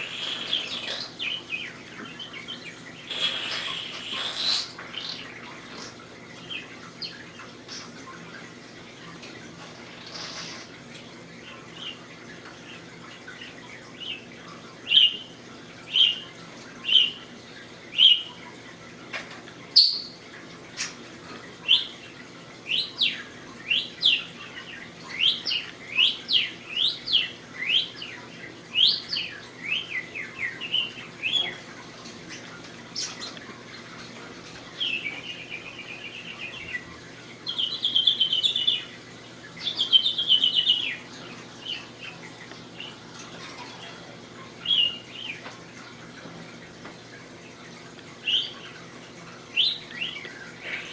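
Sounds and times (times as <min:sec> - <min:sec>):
budgie chirping and whistling: 0:03.1 - 0:05.3.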